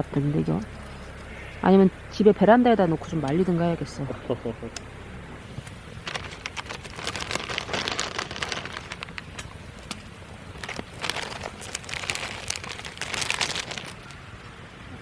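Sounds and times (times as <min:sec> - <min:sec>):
wood fire crackling and popping: 0:06.0 - 0:14.2.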